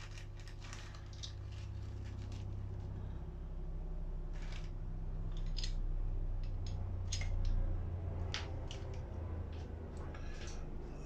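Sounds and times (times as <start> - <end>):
small parts clicking and scraping: 0.0 - 3.0, 4.3 - 5.8, 6.4 - 11.0
low hum: 0.0 - 11.0.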